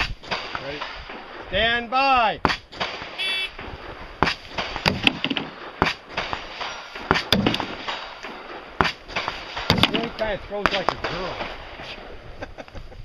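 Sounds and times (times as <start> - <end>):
knives striking target: 4.2 - 8.1.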